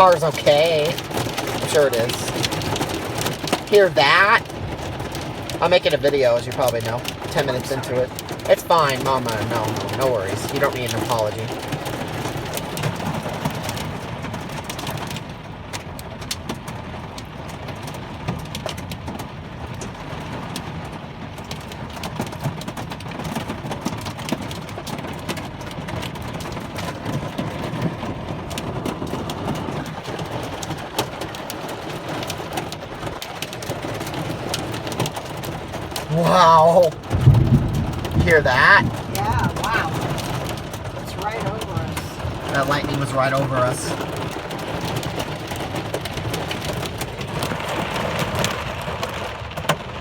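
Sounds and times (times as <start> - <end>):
hailstones ticking on a car: 0.0 - 50.0
heavy rain on a car: 0.0 - 50.0.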